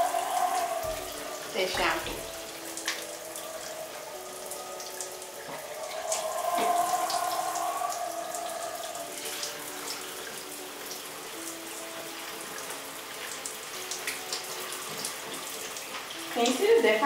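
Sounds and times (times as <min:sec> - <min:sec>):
shower water splashing: 0:00.0 - 0:17.0
steady tone: 0:03.2 - 0:09.1.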